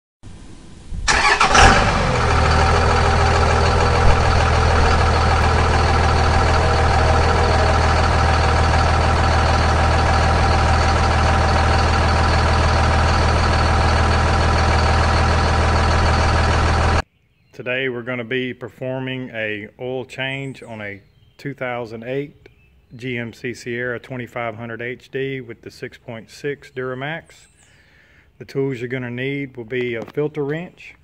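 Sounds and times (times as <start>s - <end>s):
diesel engine cranking: 1.1s - 17.0s
diesel engine idling: 1.1s - 17.0s.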